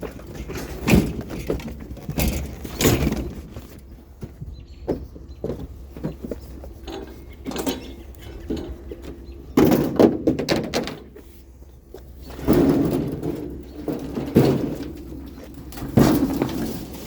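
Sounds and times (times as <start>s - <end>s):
loud clatter of hits: 12.4s - 17.0s.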